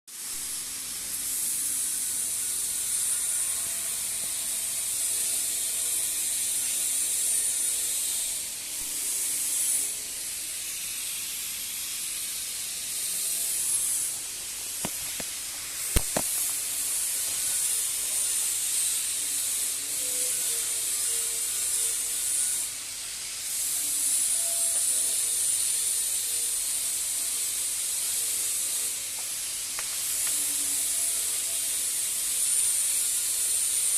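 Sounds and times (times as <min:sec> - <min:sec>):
welding arc hissing: 0:00.2 - 0:33.9
sharp clicks: 0:14.8 - 0:16.4.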